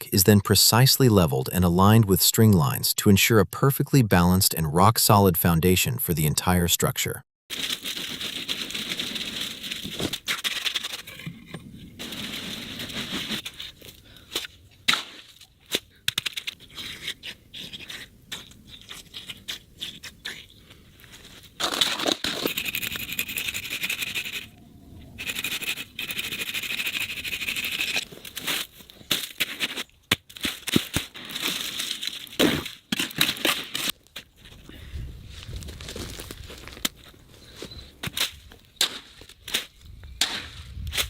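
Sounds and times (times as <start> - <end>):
hand tools scraping wet concrete: 7.6 - 11.4, 12.0 - 24.6, 25.2 - 33.9.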